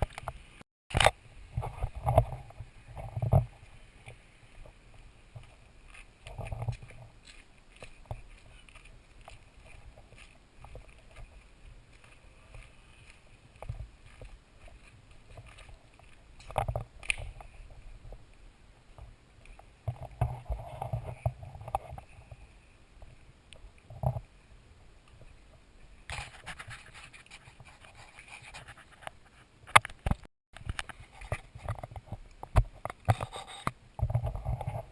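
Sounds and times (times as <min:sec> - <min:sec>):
faint background noise: 0:00.0 - 0:34.9.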